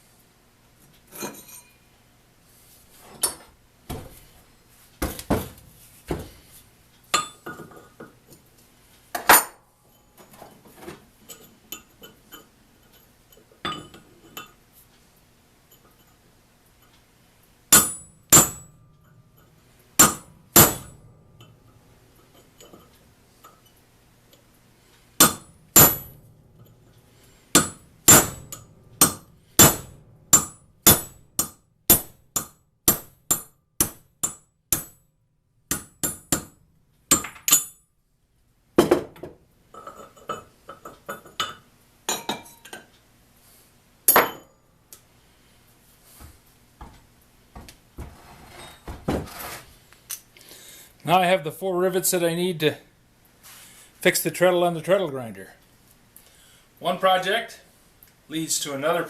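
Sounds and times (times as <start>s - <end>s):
hammer striking metal punch: 17.7s - 18.9s, 20.0s - 21.6s, 25.2s - 26.7s, 27.5s - 35.0s, 35.7s - 37.8s
metal clinks of handling: 22.2s - 24.4s.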